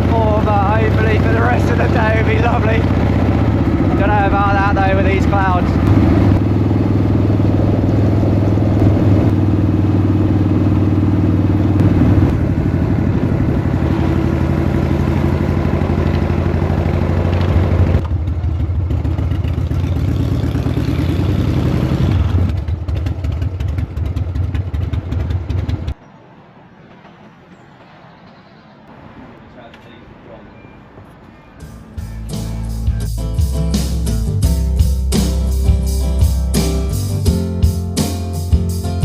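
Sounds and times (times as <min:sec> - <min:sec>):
motorcycle engine running: 0:00.0 - 0:26.0, 0:31.9 - 0:39.0.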